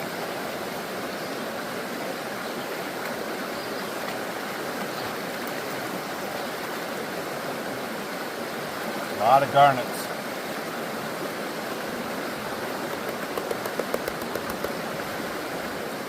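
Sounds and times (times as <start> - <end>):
stream water flowing: 0.0 - 16.0.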